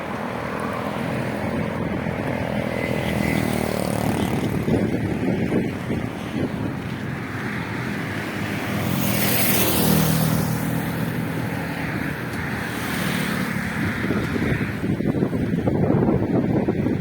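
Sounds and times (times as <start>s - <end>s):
motor vehicle hum: 0.0s - 17.0s
wind rushing over microphone: 0.0s - 17.0s.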